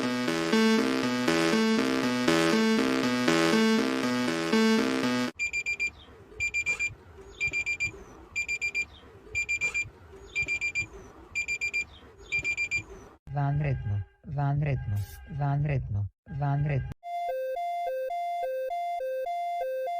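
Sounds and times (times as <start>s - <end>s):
electronic music: 0.0s - 5.4s
electronic alarm beeping: 0.0s - 13.1s, 17.0s - 19.9s.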